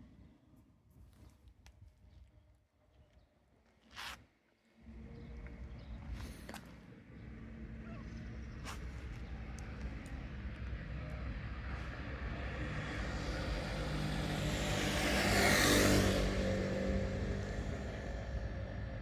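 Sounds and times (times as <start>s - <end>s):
motor vehicle passing by: 8.4s - 19.0s.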